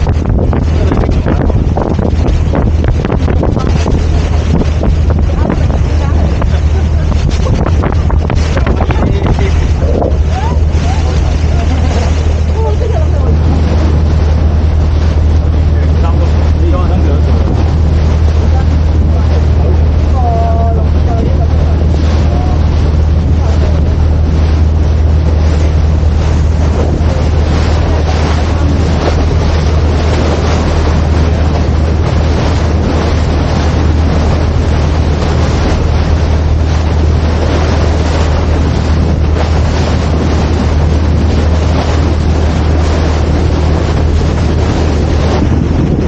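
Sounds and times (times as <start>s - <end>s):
motorboat engine running: 0.0s - 46.0s
waves rushing: 0.0s - 46.0s
wind buffeting microphone: 0.0s - 46.0s.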